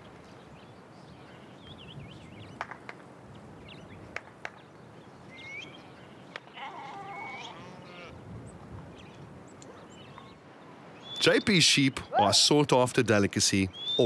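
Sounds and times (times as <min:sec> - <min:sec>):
birds chirping: 0:00.0 - 0:14.0
outdoor background: 0:00.0 - 0:14.0
wavering animal call: 0:06.5 - 0:08.2.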